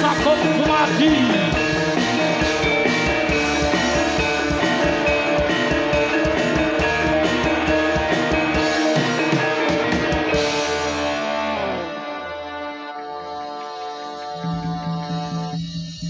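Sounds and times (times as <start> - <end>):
steady drumming: 0.0 - 11.4
loud ensemble music: 0.0 - 16.0.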